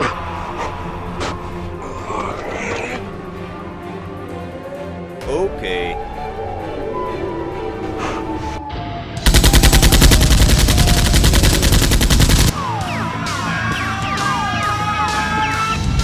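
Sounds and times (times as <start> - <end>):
background music: 0.0 - 16.0
automatic gunfire: 9.3 - 12.5.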